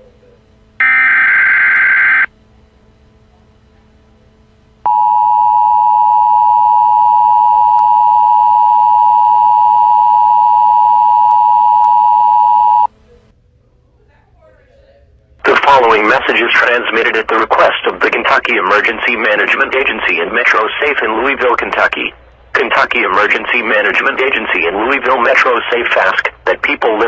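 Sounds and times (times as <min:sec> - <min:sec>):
digital header data buzz: 0:00.0 - 0:13.0, 0:15.5 - 0:27.0
two-tone attention signal: 0:00.8 - 0:02.3, 0:04.9 - 0:12.9.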